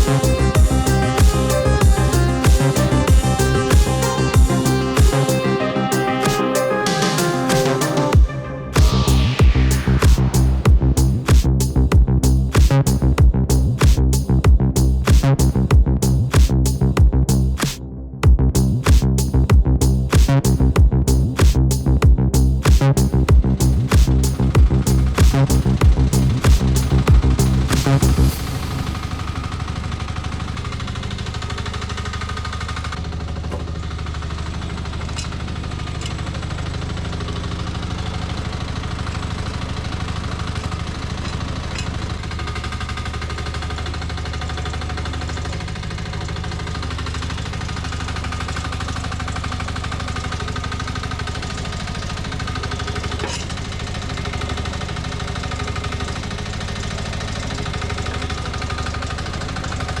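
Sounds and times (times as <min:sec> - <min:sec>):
mini excavator engine running: 0:23.8 - 1:00.0.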